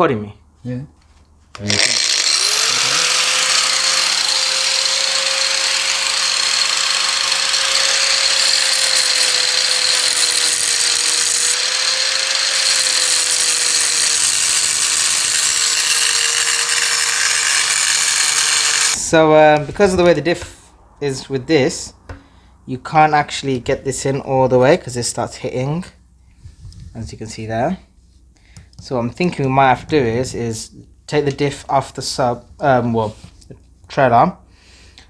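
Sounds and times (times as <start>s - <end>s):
angle grinder cutting metal: 1.6s - 19.0s.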